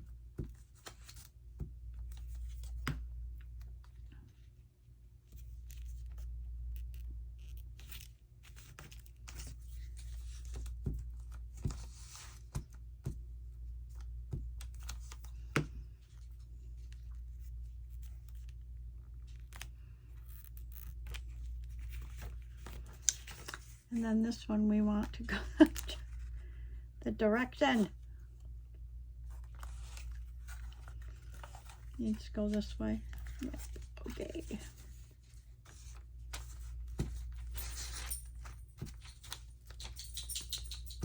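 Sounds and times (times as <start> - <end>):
paper rustling and rubbing: 29.3 - 38.1.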